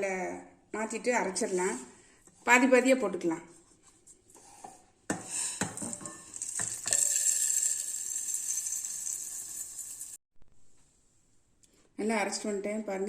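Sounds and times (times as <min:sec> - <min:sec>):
dry grains pouring into jar: 0:06.2 - 0:10.2.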